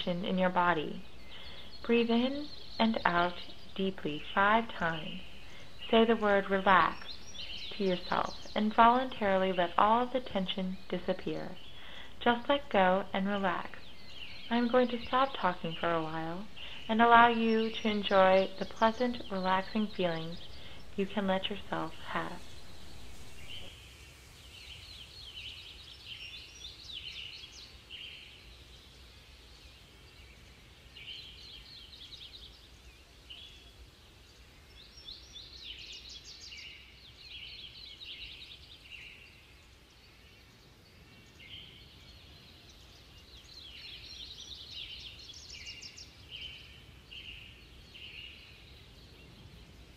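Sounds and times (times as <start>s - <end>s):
low background rumble: 0.0s - 26.9s
small birds chirping and trilling: 0.0s - 49.9s.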